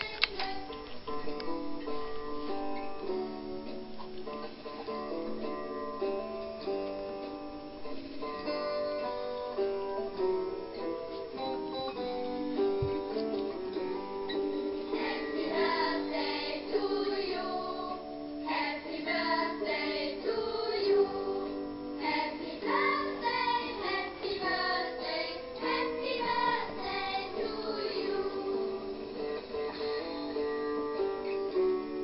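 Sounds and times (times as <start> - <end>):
person singing: 22.6 - 29.1.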